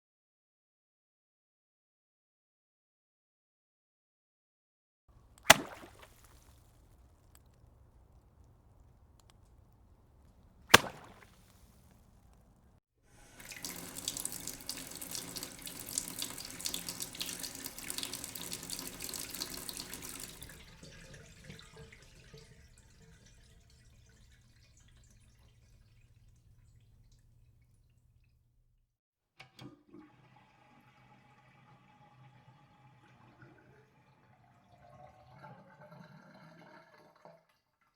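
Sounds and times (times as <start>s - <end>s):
tap water running into sink: 13.2s - 25.4s.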